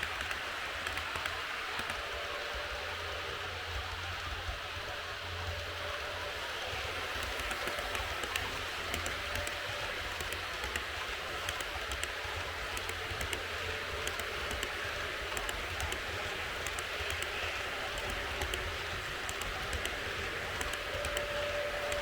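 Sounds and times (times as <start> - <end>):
model train rolling on track: 0.0 - 22.0
wheels clicking over rail joints: 0.0 - 22.0.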